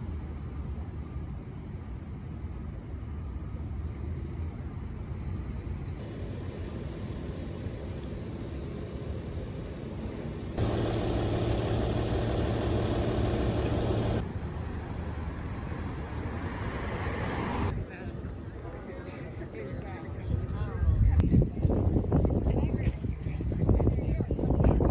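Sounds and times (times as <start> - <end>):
droning engine hum: 10.6 - 14.2
engine noise: 10.6 - 14.2.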